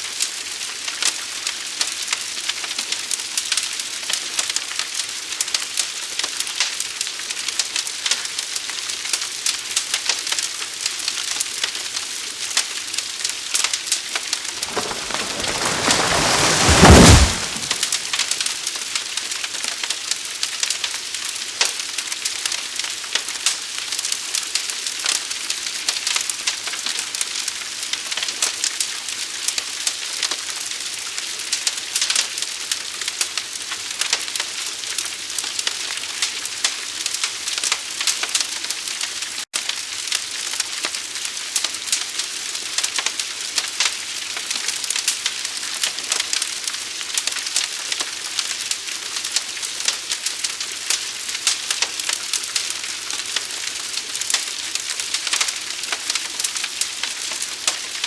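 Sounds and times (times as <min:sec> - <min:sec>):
large fire crackling and popping: 0:14.6 - 0:18.4.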